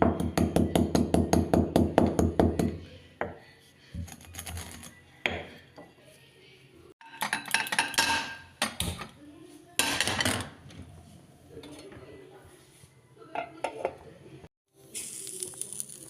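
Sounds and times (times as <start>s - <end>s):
metal utensils and dishes clattering: 3.9s - 5.0s, 7.0s - 9.1s, 9.8s - 10.8s.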